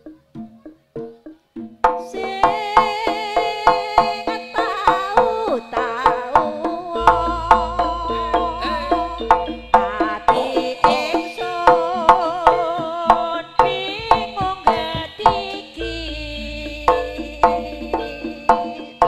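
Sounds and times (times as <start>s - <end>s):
ringing pitched gongs: 4.5s - 12.4s, 14.1s - 19.0s
sharp hand-drum strokes: 5.1s - 18.8s
wavering melodic line: 5.4s - 11.4s, 15.8s - 19.0s
deep low hum: 7.0s - 10.7s, 16.0s - 17.7s.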